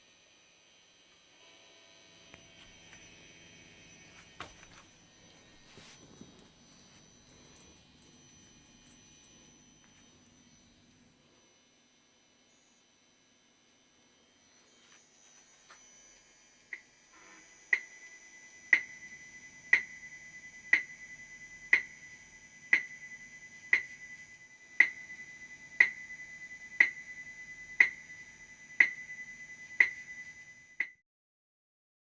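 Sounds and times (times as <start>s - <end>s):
steady high whine: 0.1s - 31.0s
sharp electronic ticks: 17.7s - 18.0s, 18.7s - 19.0s, 19.7s - 20.0s, 20.7s - 21.0s, 21.7s - 22.1s, 22.7s - 23.0s, 23.7s - 24.2s, 24.8s - 26.2s, 26.8s - 27.2s, 27.8s - 28.2s, 28.8s - 29.2s, 29.8s - 30.2s, 30.8s - 31.0s.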